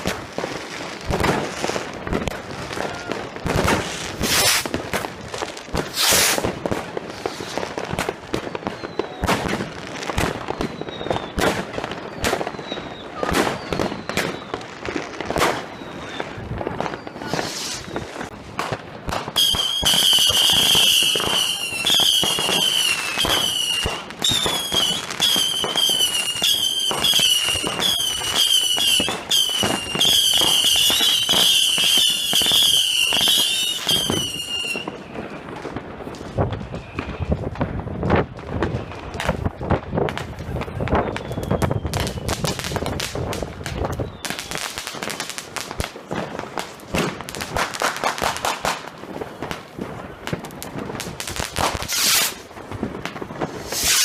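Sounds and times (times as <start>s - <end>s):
fireworks banging and crackling: 0.0s - 54.0s
faint short whistles: 10.6s - 11.4s, 41.0s - 42.4s, 44.0s - 44.6s
loud warbling whistle: 41.0s - 42.3s.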